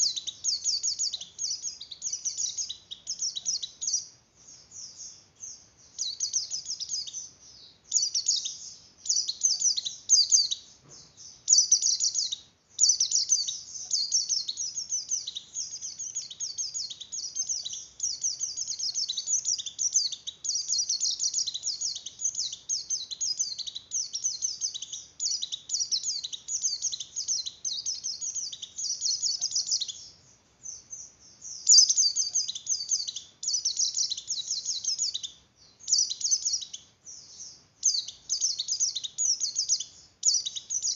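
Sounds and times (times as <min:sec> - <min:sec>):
bird twittering song: 0:00.0 - 0:40.9.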